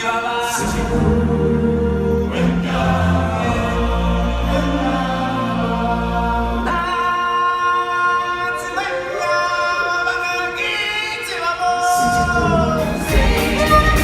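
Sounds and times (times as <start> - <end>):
choir singing held chords: 0.0 - 14.0
deep instruments: 0.6 - 7.0, 12.0 - 14.0.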